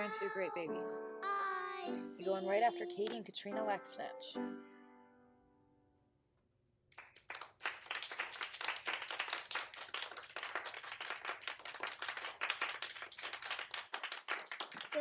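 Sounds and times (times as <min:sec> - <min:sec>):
audience applause: 0:07.0 - 0:15.0.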